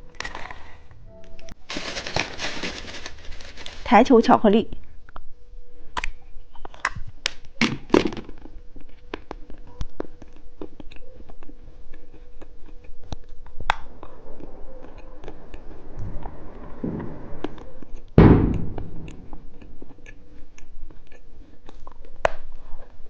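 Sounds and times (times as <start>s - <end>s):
wrapper rustling: 1.6s - 4.3s.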